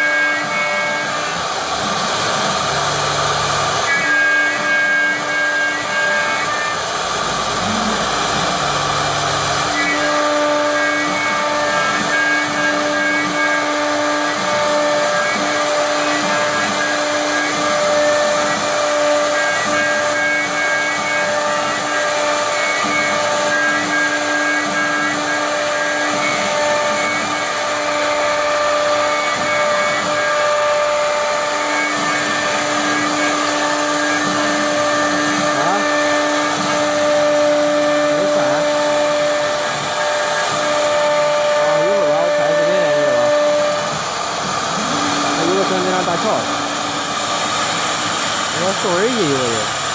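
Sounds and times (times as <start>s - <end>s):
router spindle whine: 0.0s - 49.9s
machining hiss: 39.6s - 49.9s.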